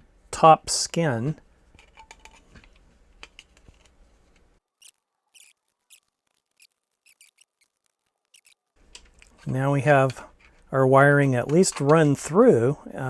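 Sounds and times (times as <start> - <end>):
wires squeaking through plastic: 4.7 - 9.6.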